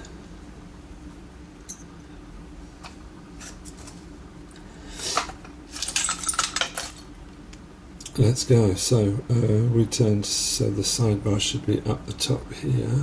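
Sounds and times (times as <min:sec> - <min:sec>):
metal tools clinking: 0:05.8 - 0:07.0.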